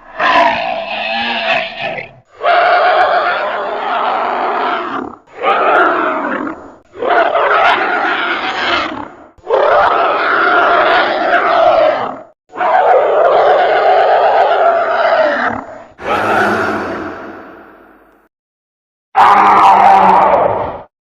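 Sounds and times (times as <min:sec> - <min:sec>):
creature calls: 0:15.1 - 0:18.0.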